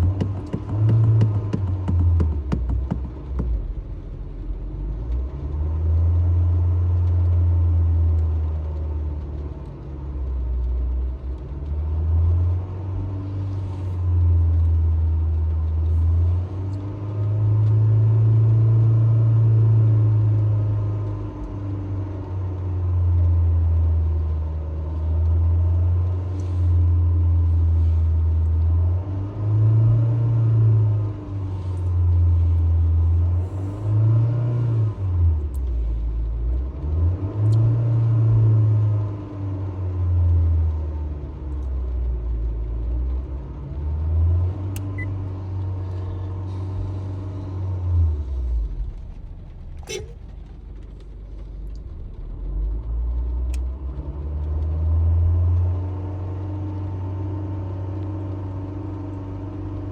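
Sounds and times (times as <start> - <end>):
car engine revving: 0.0 - 4.6.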